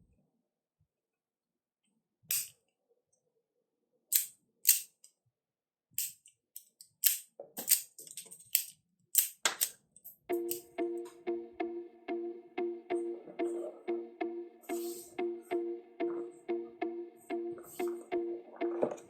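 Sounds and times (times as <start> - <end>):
toy rifle clicks: 4.1 - 4.9, 6.0 - 9.8.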